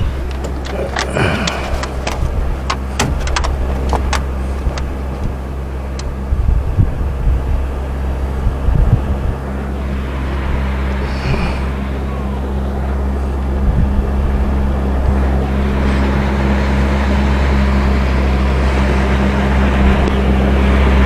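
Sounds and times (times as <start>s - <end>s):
sharp clicks: 0.0s - 6.1s
low thumps: 0.0s - 7.5s
boat motor humming: 0.0s - 21.0s.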